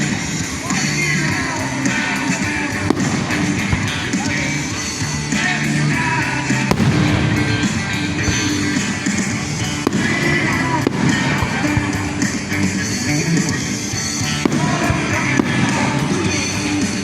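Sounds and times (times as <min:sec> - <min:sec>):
firework bangs: 0:00.0 - 0:17.0
music over sound system: 0:00.0 - 0:17.0.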